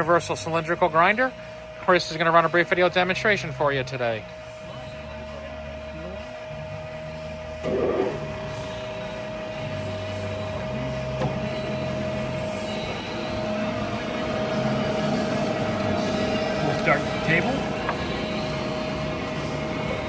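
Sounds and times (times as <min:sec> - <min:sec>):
grinder motor hum: 0:02.5 - 0:20.0
constant high tone: 0:04.7 - 0:20.0.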